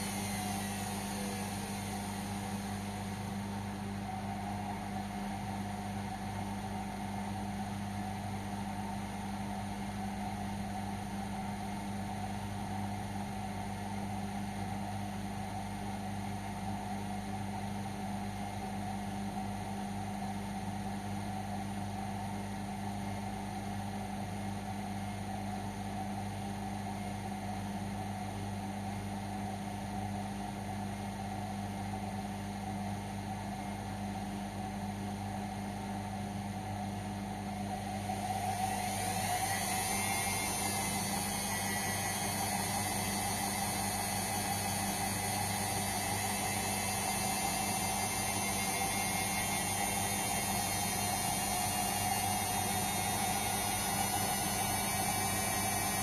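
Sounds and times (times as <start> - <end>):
spin motor whine: 0.0 - 4.9, 37.5 - 56.0
washing machine humming: 0.0 - 24.9, 32.2 - 56.0.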